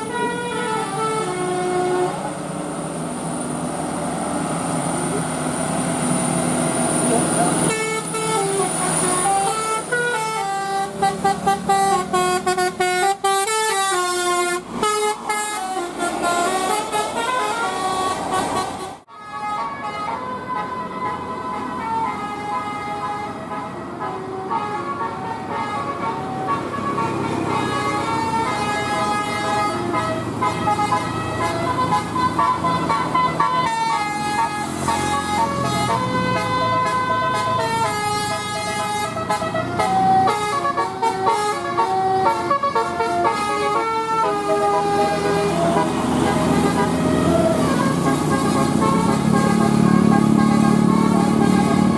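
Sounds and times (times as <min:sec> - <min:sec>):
multi-tone bus horns tooting: 0:00.0 - 0:03.0, 0:05.1 - 0:51.9
bus engines running: 0:00.0 - 0:51.9.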